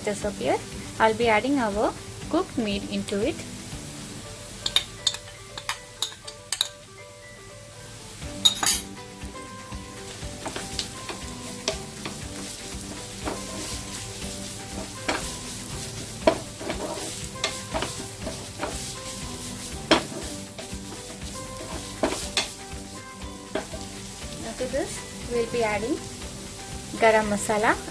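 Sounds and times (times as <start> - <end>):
chicken sizzling in oil: 0.0 - 27.9
spatula knocking against pan: 16.0 - 19.0, 19.8 - 22.6.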